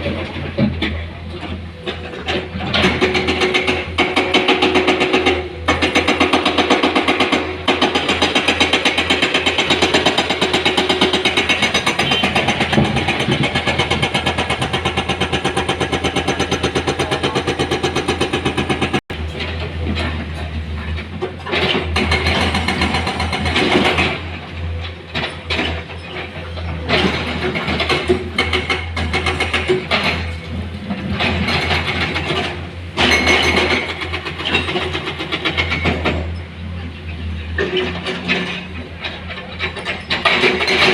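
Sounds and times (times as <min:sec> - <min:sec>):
heavy diesel engine running: 0:00.0 - 0:28.2.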